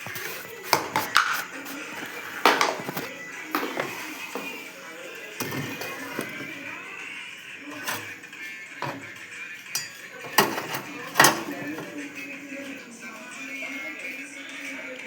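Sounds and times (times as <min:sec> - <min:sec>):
metal utensils clinking: 0:00.0 - 0:04.5, 0:05.3 - 0:06.9, 0:07.6 - 0:12.8
faint background voices: 0:00.0 - 0:15.0.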